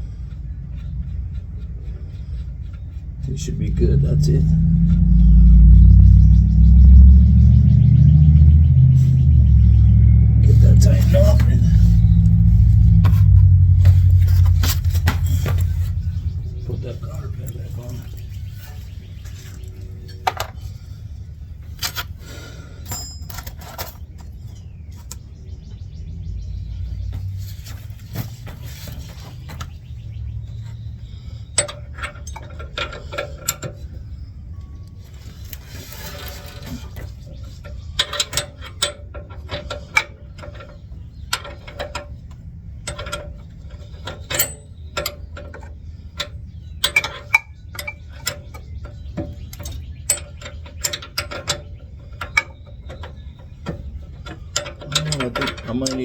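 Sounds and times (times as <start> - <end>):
low hum: 0.0 - 56.0
metal tools tapping and clicking: 9.6 - 21.0, 21.6 - 25.3, 27.1 - 56.0.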